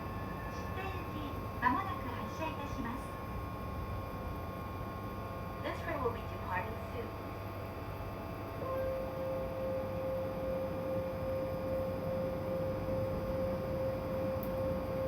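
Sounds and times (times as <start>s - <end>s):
train interior hum: 0.0s - 4.1s, 8.4s - 15.0s.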